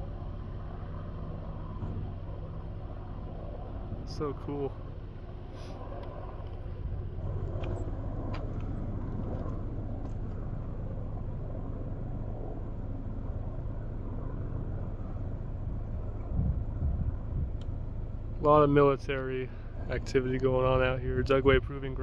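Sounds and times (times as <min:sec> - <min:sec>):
vehicle engine and tyres rumbling: 0:00.0 - 0:22.0.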